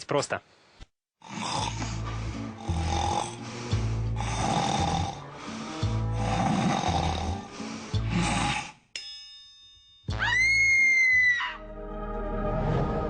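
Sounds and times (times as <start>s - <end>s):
person snoring: 1.2s - 8.9s
background music with bass: 1.6s - 8.6s.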